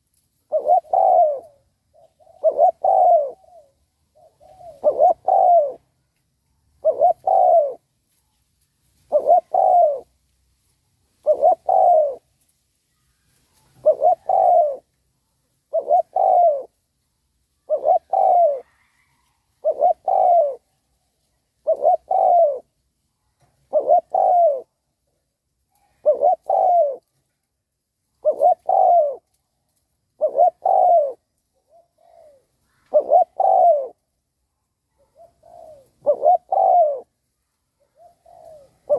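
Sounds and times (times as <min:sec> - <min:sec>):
dove cooing: 0:00.0 - 0:06.0, 0:06.8 - 0:07.9, 0:09.1 - 0:10.1, 0:11.2 - 0:12.3, 0:13.6 - 0:14.9, 0:15.7 - 0:16.8, 0:17.6 - 0:20.8, 0:21.5 - 0:22.8, 0:23.4 - 0:25.0, 0:25.7 - 0:27.2, 0:28.2 - 0:29.4, 0:30.2 - 0:34.2, 0:34.9 - 0:37.2, 0:37.8 - 0:38.9.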